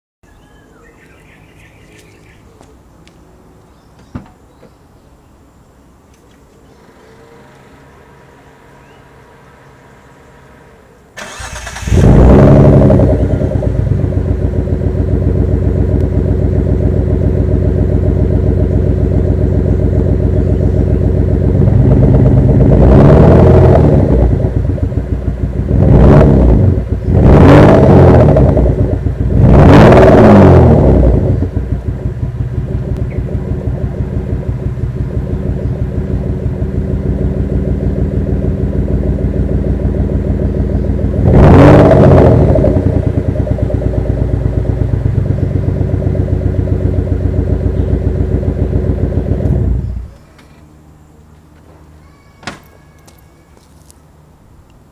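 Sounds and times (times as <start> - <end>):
engine idling unevenly: 5.8 - 27.6, 28.2 - 54.9
car engine starting: 6.3 - 52.2
engine revving: 6.7 - 50.2.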